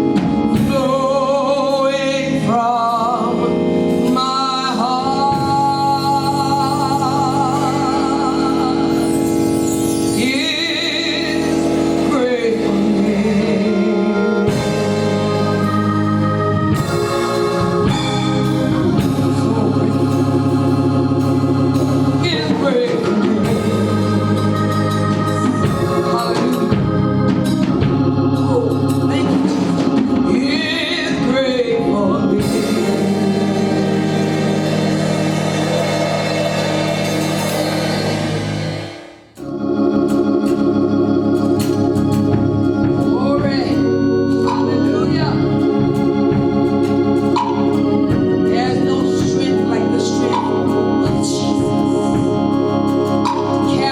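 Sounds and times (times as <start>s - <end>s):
person singing: 0.0s - 27.3s, 28.3s - 39.5s
organ sustained chords: 0.0s - 53.9s.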